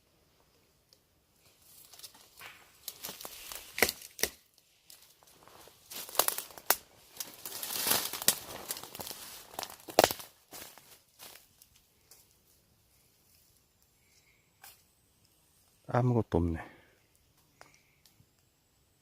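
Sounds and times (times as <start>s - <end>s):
twigs snapping: 0.9s - 12.3s
dry leaves and brush rustling: 1.3s - 14.8s.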